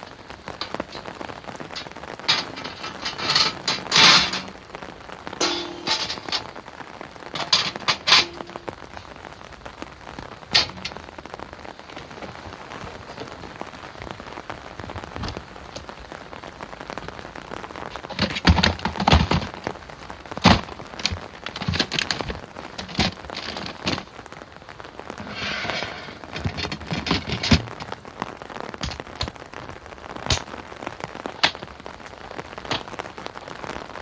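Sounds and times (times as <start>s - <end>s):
heavy rain falling: 0.0s - 34.0s
sharp clattering knocks: 0.6s - 4.7s, 5.4s - 6.6s, 7.4s - 9.1s, 10.5s - 11.1s, 18.0s - 19.7s, 20.4s - 24.1s, 25.2s - 28.0s.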